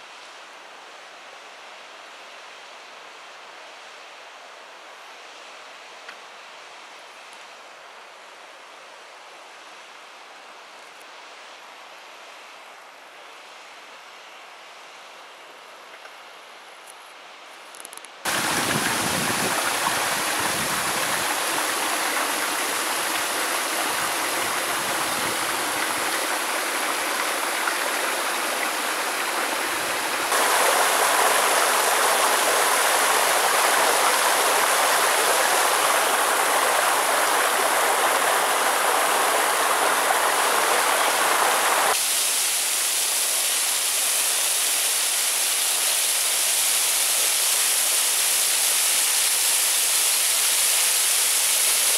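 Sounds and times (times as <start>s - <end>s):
waterfall rushing: 18.3s - 51.9s.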